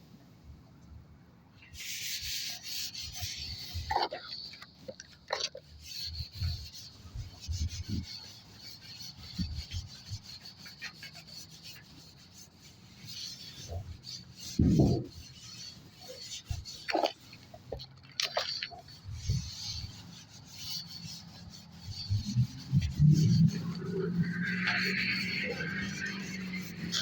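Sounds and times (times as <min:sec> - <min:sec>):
rag scrubbing a door: 0:01.8 - 0:27.0.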